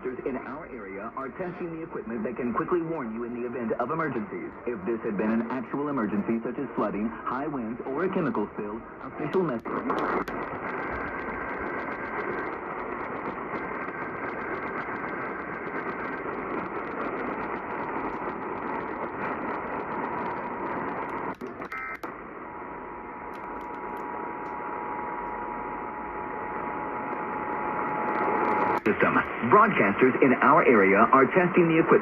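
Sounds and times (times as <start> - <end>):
radio static hiss: 0.0 - 32.0
data tones burst: 9.0 - 22.2.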